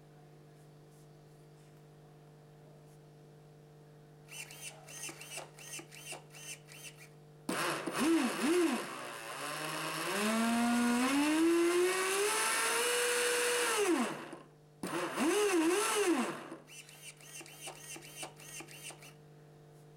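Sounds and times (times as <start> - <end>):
electric motor whine: 4.3 - 19.2.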